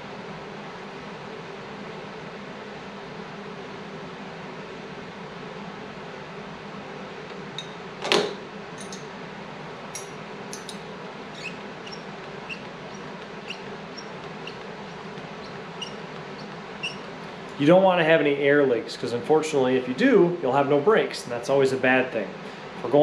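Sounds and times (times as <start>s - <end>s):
steady background hum: 0.0s - 23.0s
wrench clinking on metal: 8.8s - 9.1s, 10.0s - 11.5s.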